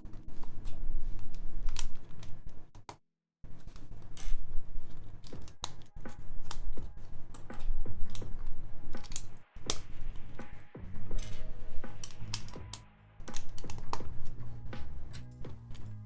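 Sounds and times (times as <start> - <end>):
plastic toy bricks clicking: 7.4 - 9.8.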